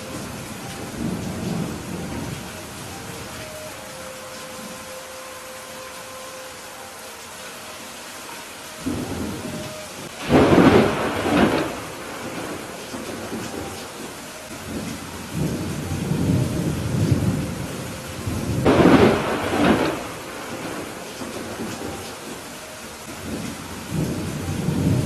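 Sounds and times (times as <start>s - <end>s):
rolling thunder rumble: 0.0s - 3.4s, 8.8s - 25.0s
steady rain: 0.0s - 25.0s
loud thunderclaps: 10.2s - 13.8s, 14.7s - 22.1s.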